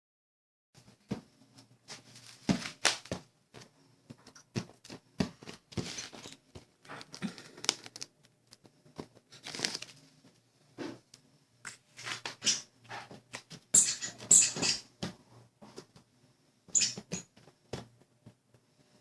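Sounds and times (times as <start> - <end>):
pet crinkling and tearing: 5.8 - 8.6, 9.3 - 10.0.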